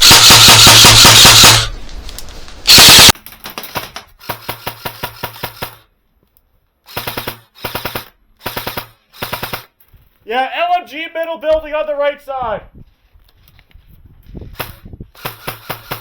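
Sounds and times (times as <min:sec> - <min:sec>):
airsoft guns firing bursts: 0:00.0 - 0:01.8, 0:02.7 - 0:03.2, 0:06.9 - 0:09.8, 0:14.6 - 0:16.0.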